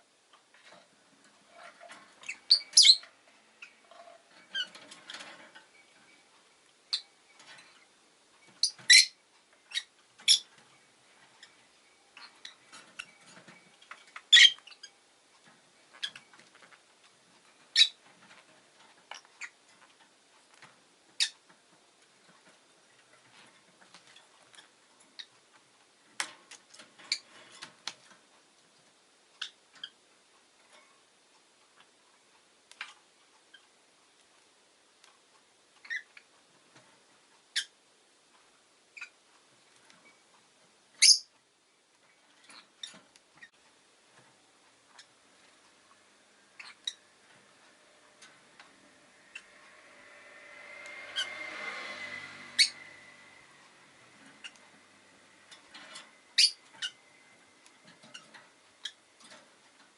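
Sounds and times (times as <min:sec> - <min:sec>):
lovebird chirping and squeaking: 0:01.5 - 0:06.2, 0:06.9 - 0:07.9, 0:08.5 - 0:10.6, 0:11.2 - 0:15.0, 0:15.9 - 0:16.7, 0:17.7 - 0:18.0, 0:19.1 - 0:19.6, 0:21.2 - 0:21.4, 0:24.1 - 0:25.3, 0:27.1 - 0:27.4, 0:29.4 - 0:30.0, 0:35.8 - 0:36.3, 0:37.5 - 0:37.8, 0:39.0 - 0:39.2, 0:41.0 - 0:41.3, 0:46.6 - 0:47.0, 0:49.3 - 0:49.6, 0:51.0 - 0:51.4, 0:52.5 - 0:52.9, 0:54.3 - 0:54.7, 0:56.3 - 0:57.0, 0:57.9 - 0:59.0.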